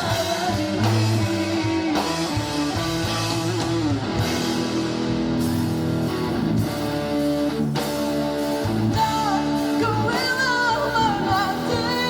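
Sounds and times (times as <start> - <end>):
lead guitar: 0.0 - 12.0
live band instrumental: 0.0 - 12.0.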